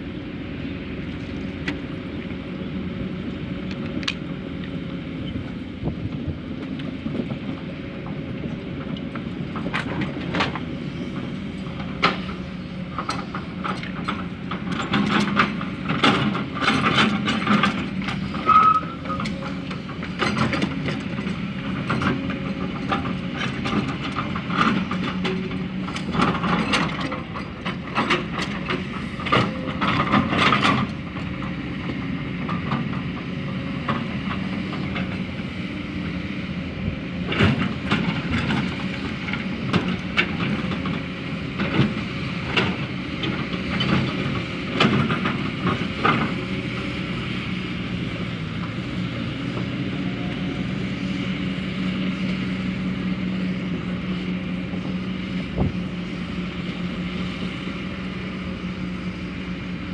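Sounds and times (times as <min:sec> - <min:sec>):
diesel earthmoving machinery running: 0:00.0 - 0:59.9
brief high squeak: 0:18.4 - 0:19.5.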